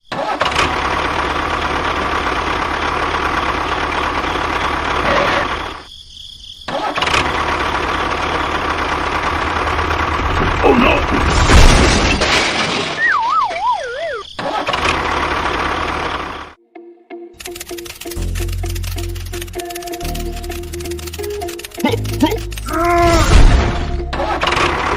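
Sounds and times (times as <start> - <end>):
wavering falling whistle tone: 13.0 - 14.3
small motor running: 17.4 - 22.9.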